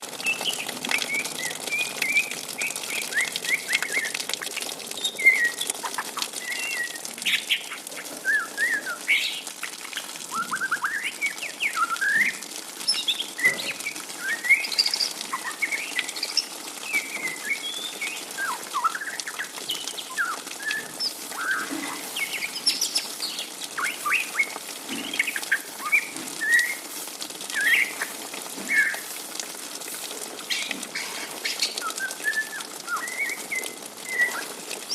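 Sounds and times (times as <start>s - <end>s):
bird twittering song: 5.0s - 9.5s, 10.4s - 26.8s, 27.5s - 28.1s, 28.7s - 29.0s, 30.5s - 34.9s.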